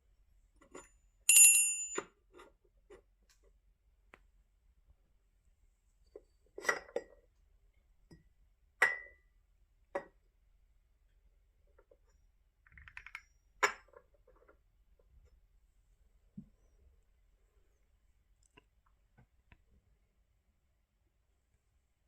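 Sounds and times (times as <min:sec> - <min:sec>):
small bells clinking: 0:01.3 - 0:02.1.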